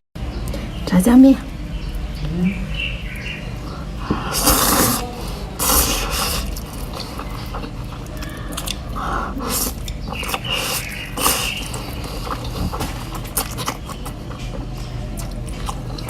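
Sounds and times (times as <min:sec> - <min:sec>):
chewing and mouth noises: 0:03.7 - 0:16.0
wet noodle slurps: 0:04.2 - 0:14.2.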